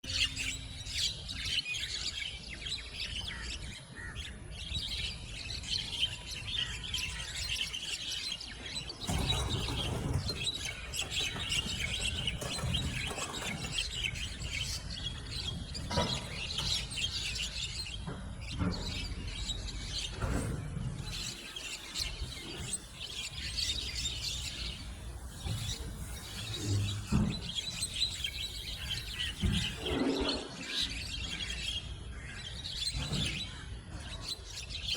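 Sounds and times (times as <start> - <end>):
birds chattering and squawking: 0.0 - 34.9
low rumbling noise: 22.3 - 30.5.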